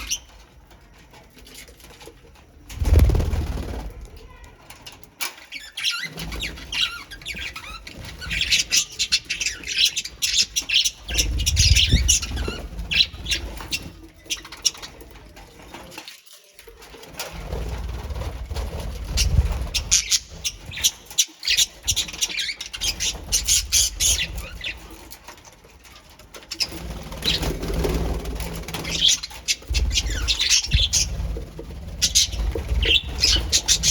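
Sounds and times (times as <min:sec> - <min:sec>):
birds chirping and calling: 0:00.0 - 0:03.9, 0:04.8 - 0:16.1, 0:17.4 - 0:33.9
wings flapping: 0:02.6 - 0:04.2, 0:10.8 - 0:14.0, 0:17.1 - 0:20.9, 0:26.5 - 0:33.9.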